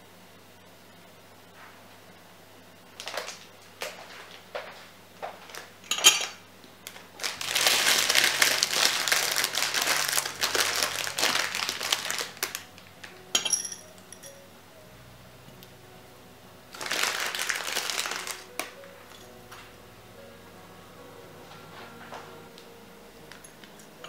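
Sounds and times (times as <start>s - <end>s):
packaging crinkling: 3.0s - 4.4s, 5.4s - 13.4s, 16.7s - 19.3s
ringing clinks: 13.3s - 14.5s.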